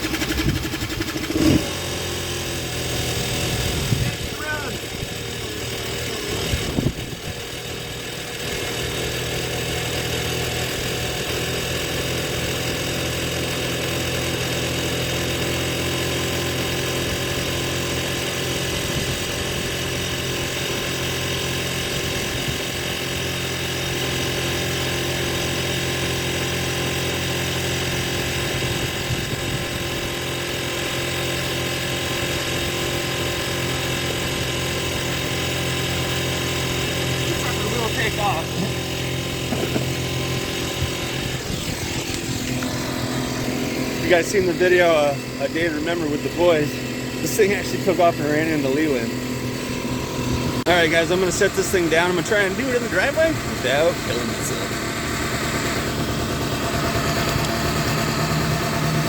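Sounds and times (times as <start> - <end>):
engine knocks: 0.0 - 1.7, 32.5 - 59.0
atv engine idling: 0.0 - 59.0.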